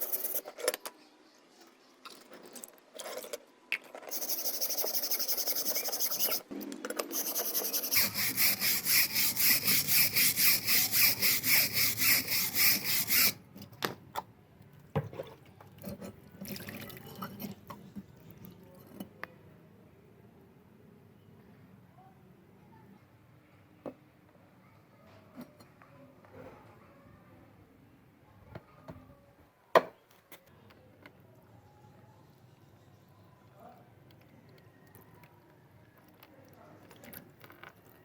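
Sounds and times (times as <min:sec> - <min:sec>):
scraping on a steel file: 0:04.1 - 0:06.5, 0:07.1 - 0:13.4.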